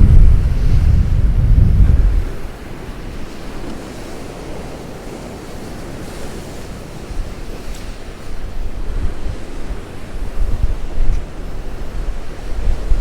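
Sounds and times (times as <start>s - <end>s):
waves surging and breaking: 0.0s - 13.0s
wind buffeting microphone: 0.0s - 13.0s.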